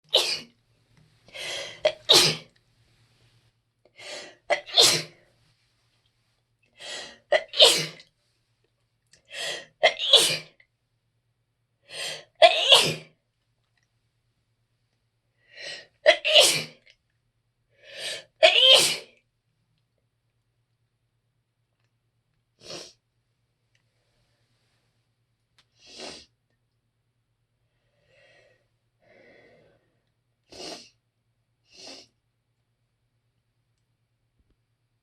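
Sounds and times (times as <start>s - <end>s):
person sneezing: 0.1s - 0.5s, 1.4s - 2.5s, 4.0s - 5.2s, 6.8s - 8.0s, 9.4s - 10.6s, 12.0s - 13.1s, 16.1s - 16.8s, 18.0s - 19.1s.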